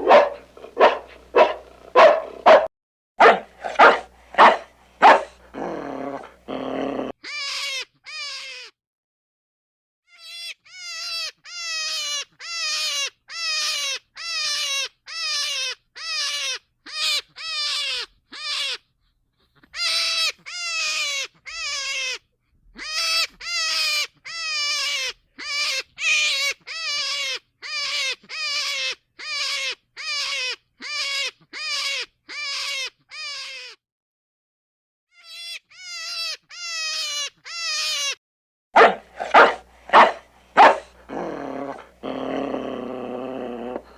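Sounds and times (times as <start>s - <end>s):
animal high cries: 3.2s - 8.8s, 10.1s - 18.9s, 19.6s - 33.8s, 35.1s - 38.2s, 38.8s - 42.3s.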